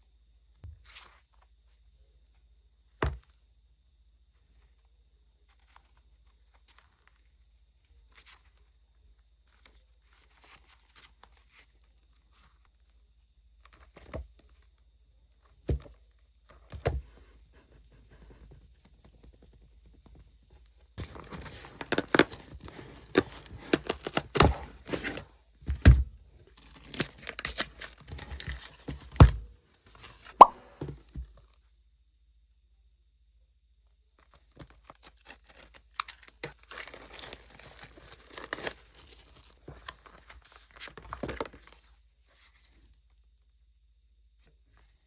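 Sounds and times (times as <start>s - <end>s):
plastic packaging tearing and crinkling: 21.0s - 25.3s, 26.6s - 29.3s, 34.6s - 41.7s.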